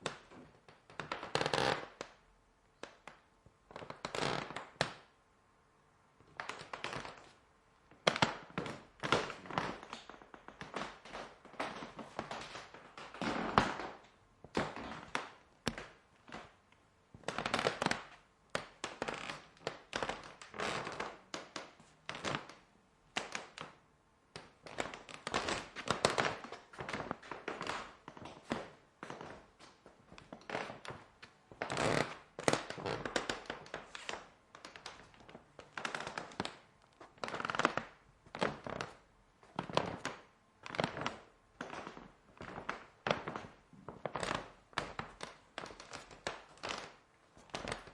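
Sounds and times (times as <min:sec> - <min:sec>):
footsteps on creaking wooden floor: 0:08.6 - 0:16.5, 0:19.0 - 0:21.1, 0:24.7 - 0:34.2.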